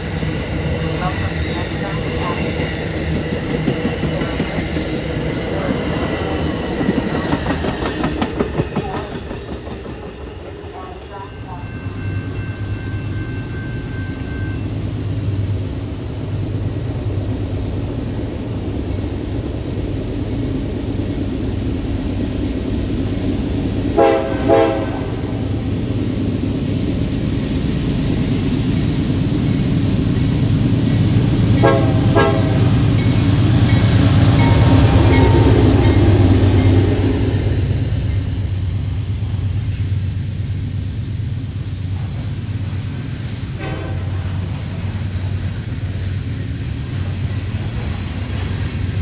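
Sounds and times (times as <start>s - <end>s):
train rumbling: 0.0s - 49.0s
train horn blasts: 23.9s - 25.5s, 31.6s - 32.9s, 43.5s - 44.6s.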